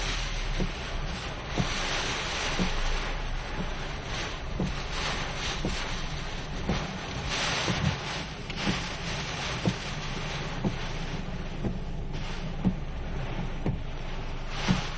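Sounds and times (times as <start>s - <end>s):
heavy rain hissing: 0.0s - 14.9s.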